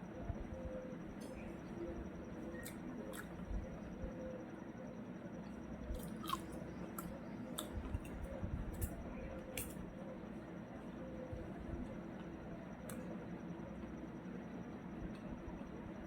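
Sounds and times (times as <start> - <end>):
person chewing food: 2.5 - 3.4, 5.9 - 9.8.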